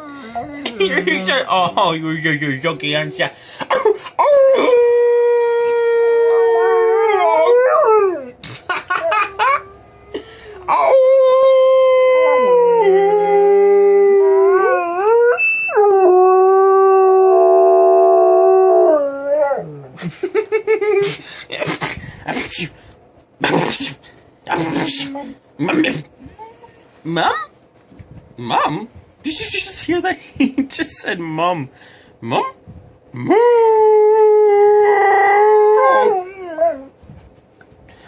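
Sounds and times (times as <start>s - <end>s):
dog howling: 4.2s - 8.4s, 9.0s - 19.9s, 33.2s - 36.9s.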